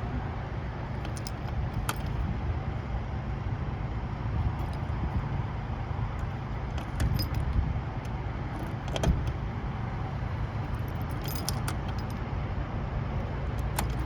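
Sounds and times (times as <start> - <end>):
diesel generator rumbling: 0.0 - 14.0
metallic clicks and jingles: 0.9 - 2.2, 6.2 - 7.6, 10.6 - 12.2, 13.5 - 14.0.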